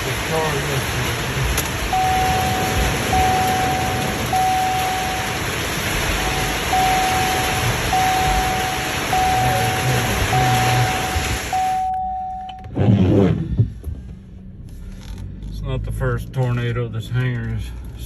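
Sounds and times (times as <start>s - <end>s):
constant rushing noise: 0.0s - 11.8s
electronic alarm beeps: 1.9s - 5.4s, 6.2s - 12.7s.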